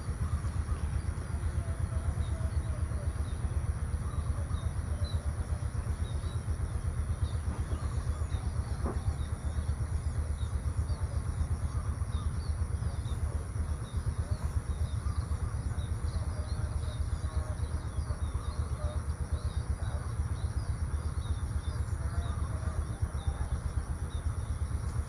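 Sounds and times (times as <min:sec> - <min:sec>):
low fluctuating rumble: 0:00.0 - 0:25.0
small birds chirping: 0:00.0 - 0:25.0.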